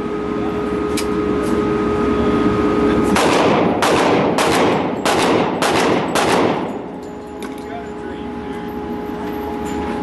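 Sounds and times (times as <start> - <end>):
steady hum: 0.0 - 10.0
gunshots: 3.1 - 6.8.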